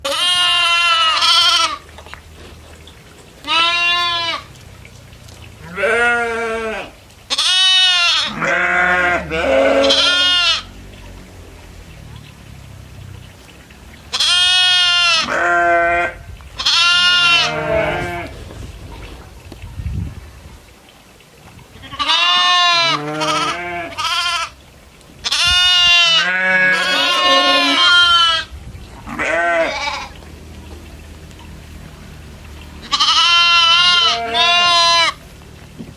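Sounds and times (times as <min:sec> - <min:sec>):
goats bleating: 0:00.0 - 0:01.9, 0:03.4 - 0:04.5, 0:05.6 - 0:10.7, 0:14.1 - 0:18.4, 0:21.8 - 0:24.6, 0:25.2 - 0:30.2, 0:32.8 - 0:35.3.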